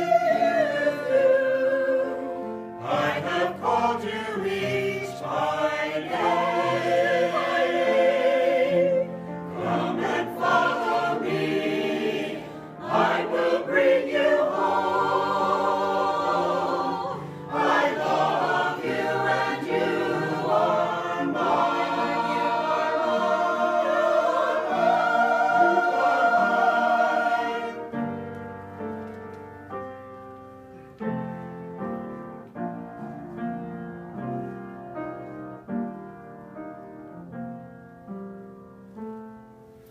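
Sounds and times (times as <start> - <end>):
choir singing gospel song: 0.0 - 28.2
piano notes: 0.0 - 39.9.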